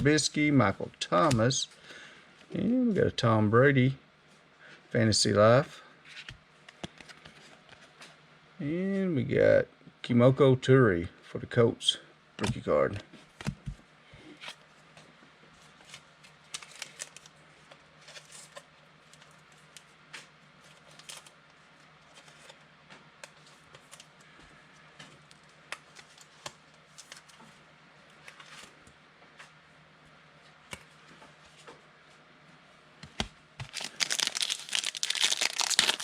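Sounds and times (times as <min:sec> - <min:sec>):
trading cards rustling and clicking: 0:15.8 - 0:17.4, 0:33.1 - 0:36.0.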